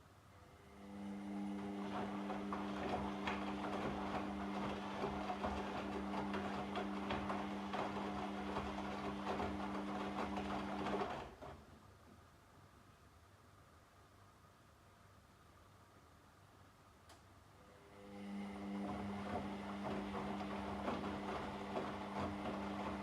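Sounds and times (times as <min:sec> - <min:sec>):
washing machine motor hum: 0:00.6 - 0:11.7, 0:17.6 - 0:23.0.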